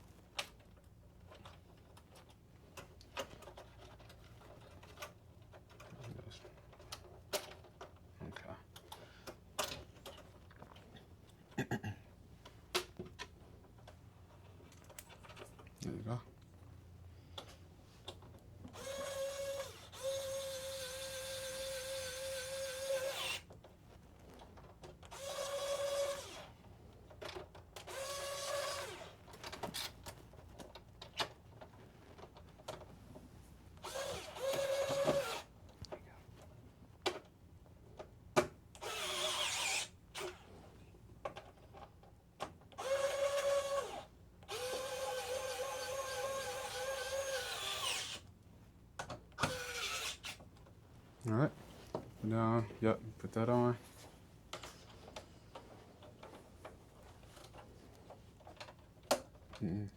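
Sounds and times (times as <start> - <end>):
electric screwdriver whining: 18.7 - 23.5, 25.1 - 26.5, 27.8 - 29.2, 33.8 - 35.5, 38.8 - 40.5, 42.8 - 48.2, 49.4 - 50.4.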